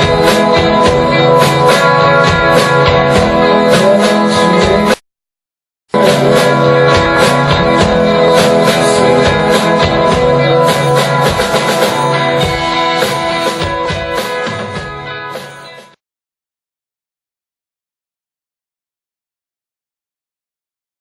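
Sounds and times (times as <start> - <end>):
loud live droning music: 6.0 - 15.6.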